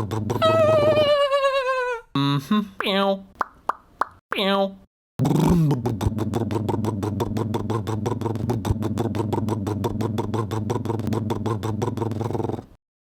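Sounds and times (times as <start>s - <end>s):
rapid cartoon pulsing: 0.0s - 1.2s, 5.2s - 12.8s.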